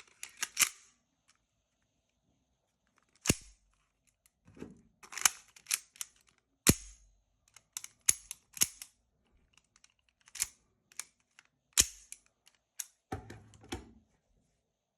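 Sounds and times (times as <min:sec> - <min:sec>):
pistol parts clicking: 0:00.0 - 0:01.4, 0:03.0 - 0:04.4, 0:05.0 - 0:13.1.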